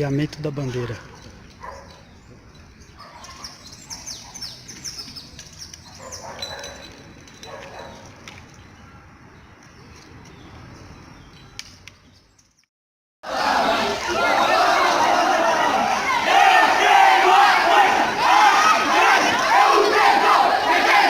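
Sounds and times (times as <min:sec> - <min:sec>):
birds chirping: 0:00.0 - 0:06.9
faint outdoor background: 0:00.0 - 0:21.0.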